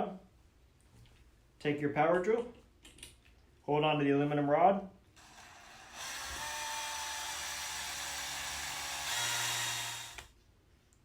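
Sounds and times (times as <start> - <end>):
power drill motor whine: 5.2 - 10.3.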